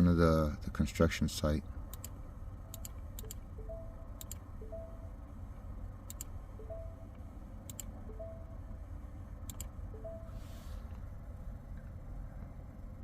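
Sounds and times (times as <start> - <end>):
steady low hum: 0.0 - 13.0
two-note electronic beeps: 3.5 - 5.3, 6.6 - 7.2, 8.0 - 8.7, 9.9 - 10.6
computer mouse clicks: 4.2 - 4.4.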